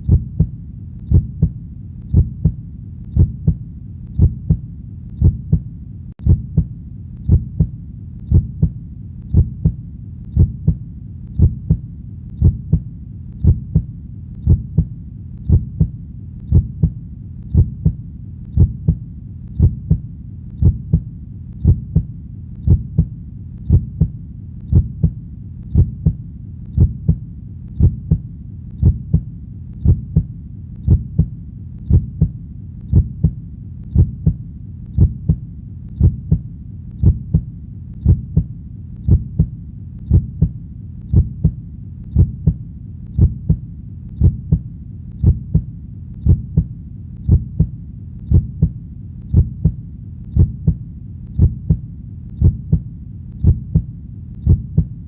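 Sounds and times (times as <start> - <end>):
heartbeat thumps: 0.0 - 55.0.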